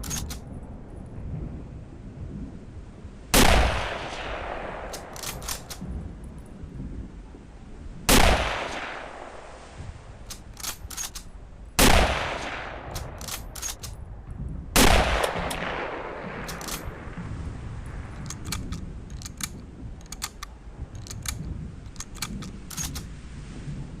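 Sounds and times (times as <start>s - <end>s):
rifle bolt clicks and clacks: 0.0s - 0.5s, 4.9s - 5.8s, 10.3s - 11.3s, 12.9s - 14.0s, 15.1s - 15.7s, 16.4s - 17.0s, 18.2s - 23.1s
rifle shots with echo: 3.4s - 5.8s, 8.1s - 9.4s, 11.8s - 13.9s, 14.8s - 17.2s.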